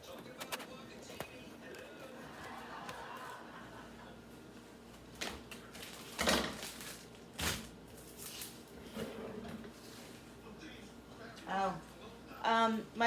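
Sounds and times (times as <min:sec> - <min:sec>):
kitchen items knocking and clattering: 0:05.2 - 0:07.6.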